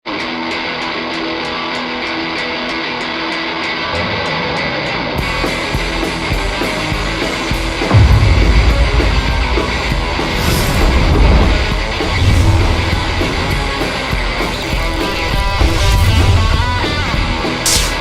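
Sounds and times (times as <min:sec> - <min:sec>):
electric guitar: 0:00.0 - 0:18.0
bass: 0:00.1 - 0:18.0
heavy drums: 0:05.2 - 0:18.0.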